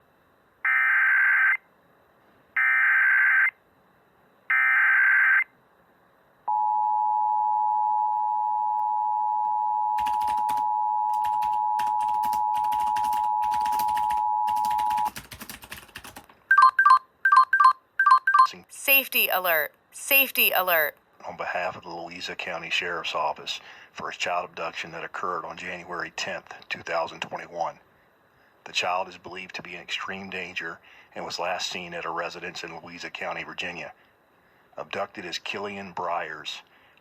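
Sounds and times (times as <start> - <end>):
short beeps: 6.5 - 11.8.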